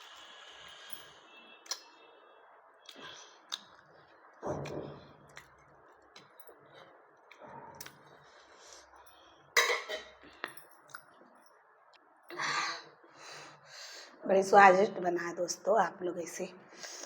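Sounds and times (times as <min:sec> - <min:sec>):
eating noises: 0:02.8 - 0:04.0.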